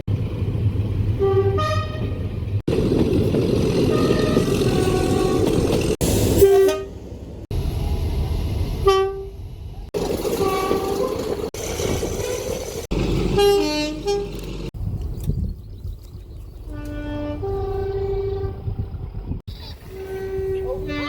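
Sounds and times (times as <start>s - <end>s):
rumble of passing trains: 0.0s - 21.0s
train horn blasts: 1.2s - 2.2s, 3.9s - 5.6s, 6.4s - 7.0s, 8.8s - 9.4s, 13.4s - 14.4s, 16.7s - 18.8s, 19.9s - 21.0s
two-tone train horn: 1.2s - 2.2s, 3.9s - 5.6s, 6.4s - 7.0s, 8.8s - 9.4s, 13.4s - 14.4s, 16.7s - 18.8s, 19.9s - 21.0s.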